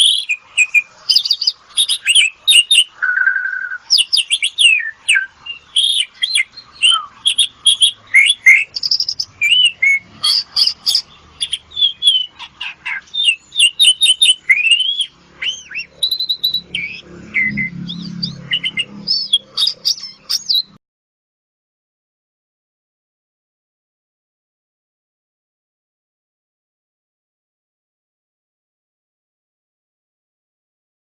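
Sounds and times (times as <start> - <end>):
starling singing: 0.0 - 20.8.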